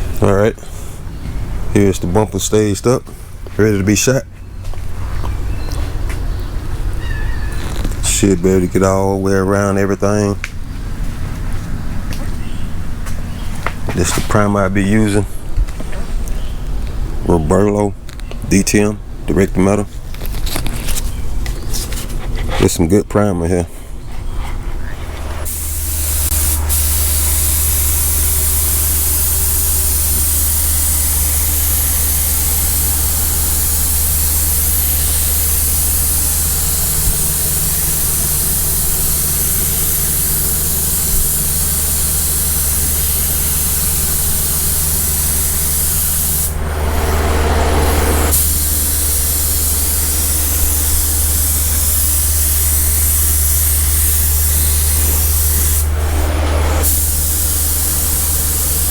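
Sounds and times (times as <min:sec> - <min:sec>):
paint spray gun hissing: 0:25.4 - 0:58.9.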